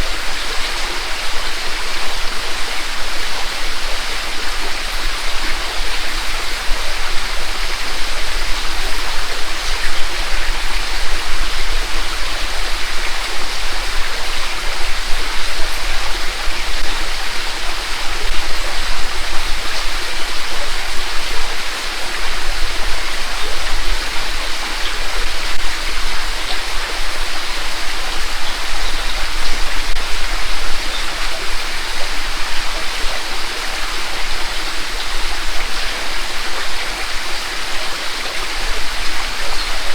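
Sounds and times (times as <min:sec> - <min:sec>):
creek rushing over rocks: 0:00.0 - 0:39.9.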